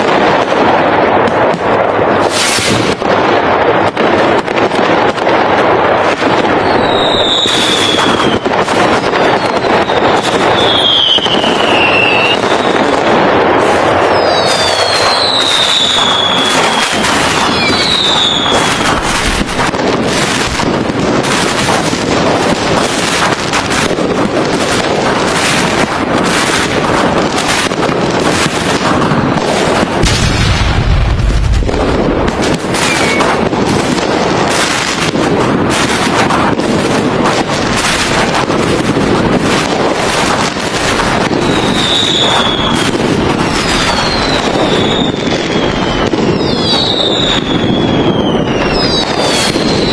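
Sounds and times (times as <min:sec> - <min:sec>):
deep firework boom: 0:00.0 - 0:49.9
fireworks crackling and banging: 0:00.0 - 0:49.9
falling firework whistles: 0:02.2 - 0:03.0, 0:06.4 - 0:23.9, 0:24.6 - 0:33.6, 0:39.4 - 0:49.9.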